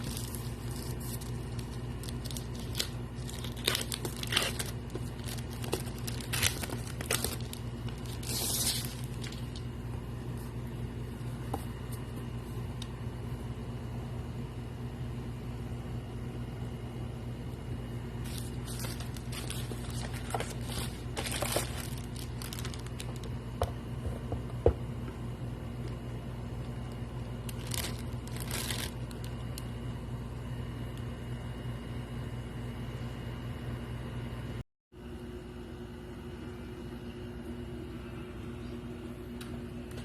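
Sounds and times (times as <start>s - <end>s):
plastic packaging crinkling: 0.0s - 9.7s, 18.2s - 23.5s, 27.4s - 29.6s
steady low hum: 0.0s - 40.0s.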